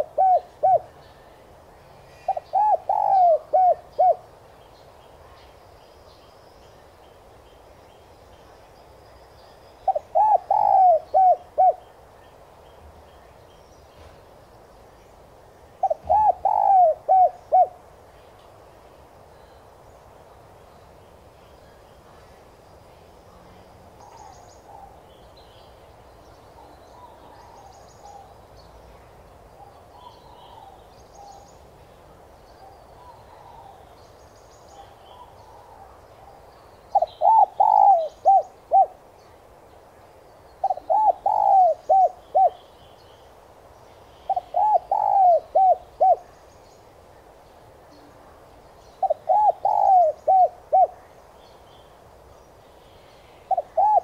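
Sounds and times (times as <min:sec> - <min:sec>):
dove cooing: 0:00.0 - 0:01.0, 0:02.2 - 0:04.2, 0:09.9 - 0:11.9, 0:15.8 - 0:17.8, 0:34.9 - 0:39.0, 0:40.6 - 0:42.6, 0:44.3 - 0:46.2, 0:49.0 - 0:51.1, 0:53.5 - 0:54.0
small birds chirping: 0:00.0 - 0:54.0.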